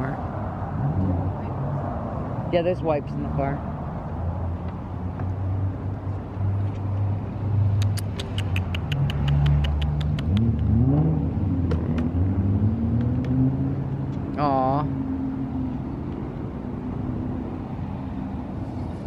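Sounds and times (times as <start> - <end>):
car engine revving: 7.5 - 14.3.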